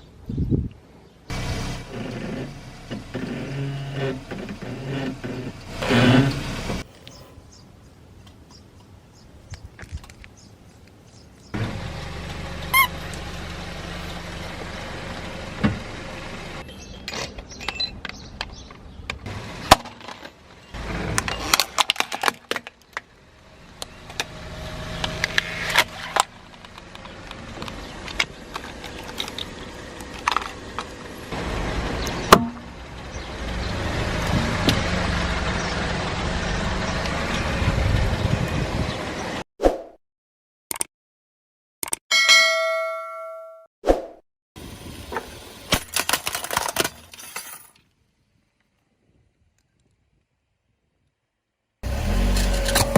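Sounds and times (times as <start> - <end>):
car engine running: 11.6 - 16.6, 51.8 - 52.9
objects crunching under tyres: 19.3 - 23.2, 23.8 - 31.4, 45.1 - 48.0, 51.8 - 52.9.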